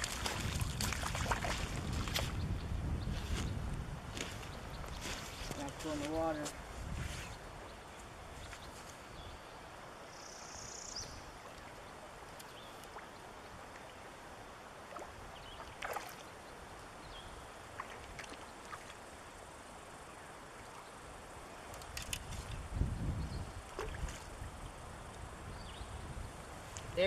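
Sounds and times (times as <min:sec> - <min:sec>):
brook water flowing: 0:00.0 - 0:02.5, 0:11.1 - 0:22.8, 0:23.4 - 0:25.5.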